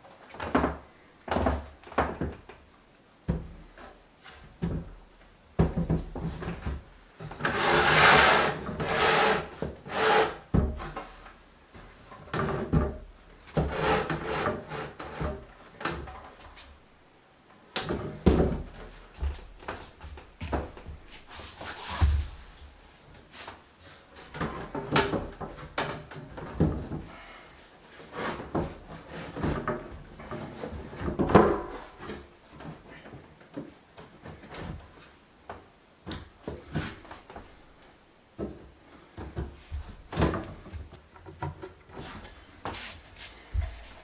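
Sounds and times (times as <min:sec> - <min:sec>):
wooden knocks and clatter: 0:05.6 - 0:07.4, 0:39.2 - 0:42.3.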